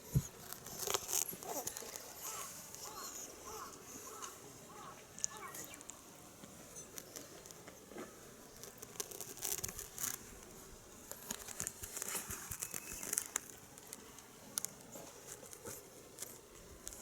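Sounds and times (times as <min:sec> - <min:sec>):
claw scratches: 0:00.0 - 0:06.0, 0:08.5 - 0:10.4, 0:11.1 - 0:14.0.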